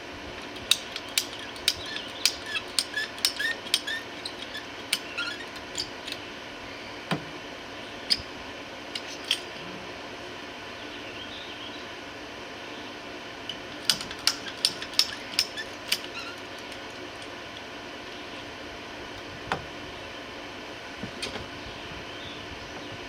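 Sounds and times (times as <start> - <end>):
hand tools clicking and snipping: 0.4 - 6.2, 8.9 - 9.5, 13.5 - 17.3.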